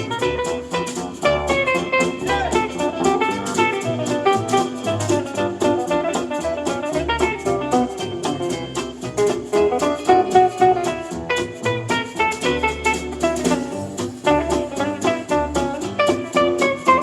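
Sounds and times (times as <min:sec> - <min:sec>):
bass and drums: 0:00.0 - 0:17.0
lead guitar melody: 0:00.0 - 0:17.0.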